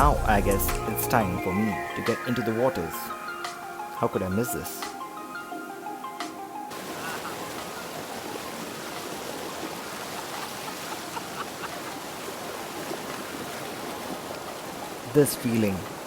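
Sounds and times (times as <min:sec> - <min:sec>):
waterfall rushing: 0:06.7 - 0:16.0.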